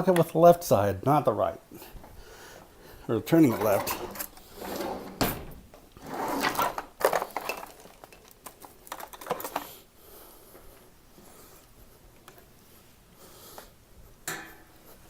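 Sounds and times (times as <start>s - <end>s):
handling clicks and knocks: 6.6s - 9.7s.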